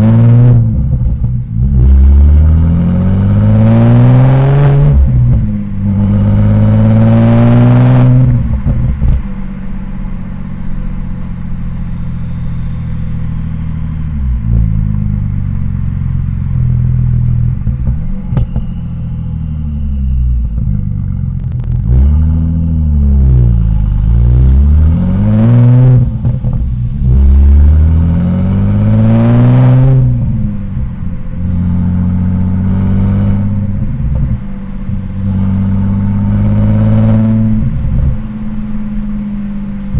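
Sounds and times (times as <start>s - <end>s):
car engine revving: 0.0s - 39.9s
falling turbo whistle: 4.5s - 14.2s, 32.1s - 39.9s.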